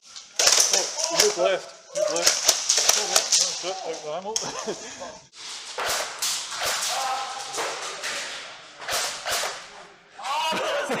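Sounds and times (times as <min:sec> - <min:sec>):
airsoft gunfire cracks: 0:08.8 - 0:09.7.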